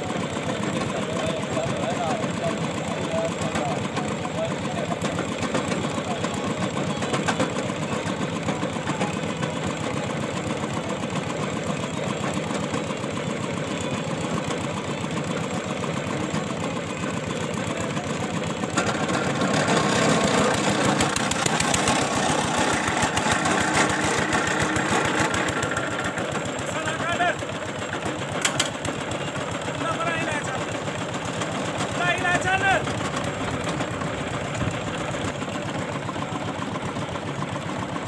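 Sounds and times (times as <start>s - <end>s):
drilling rig engine running: 0.0s - 38.0s.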